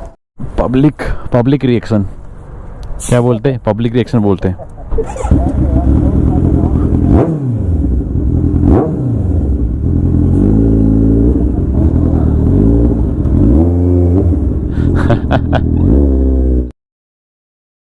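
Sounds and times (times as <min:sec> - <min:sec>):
motorcycle engine revving: 0:05.0 - 0:16.7.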